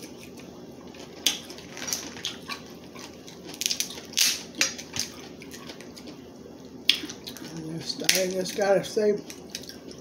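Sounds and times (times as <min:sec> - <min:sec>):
chewing: 0:00.0 - 0:06.2
crab shell cracking: 0:03.3 - 0:06.0.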